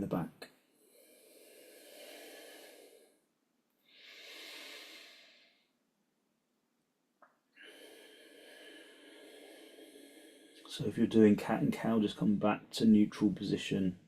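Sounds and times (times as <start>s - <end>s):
person breathing deeply: 0.7s - 5.8s, 7.5s - 11.1s.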